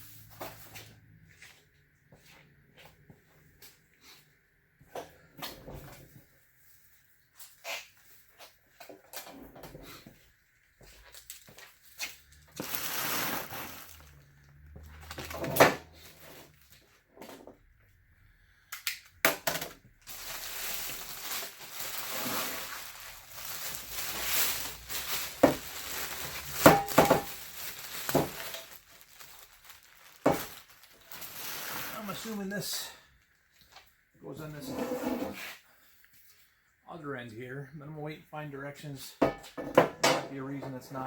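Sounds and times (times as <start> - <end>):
packaging rustling: 12.4 - 15.4, 20.0 - 32.4.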